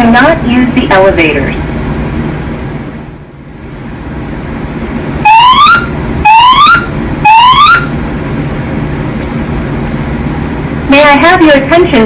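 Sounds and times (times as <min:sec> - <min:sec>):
steady low hum: 0:00.0 - 0:12.0
fire alarm whoop tones: 0:05.2 - 0:08.0.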